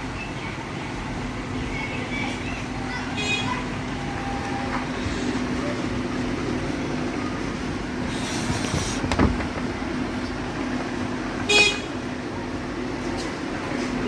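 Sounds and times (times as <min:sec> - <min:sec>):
traffic noise: 0:00.0 - 0:14.0
vehicle horn toot: 0:03.2 - 0:03.6, 0:11.4 - 0:12.0.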